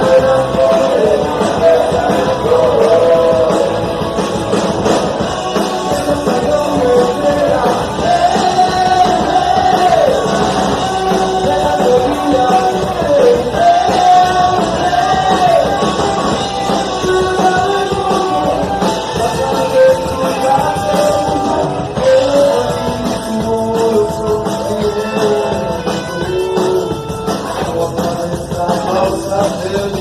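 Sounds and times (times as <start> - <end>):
person singing: 0.0 - 4.3, 5.2 - 30.0
punk rock band playing: 0.0 - 30.0.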